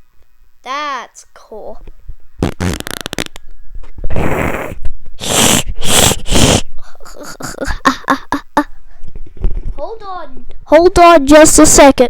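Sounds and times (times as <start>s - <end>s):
breathy hissing bursts: 4.1s - 7.7s.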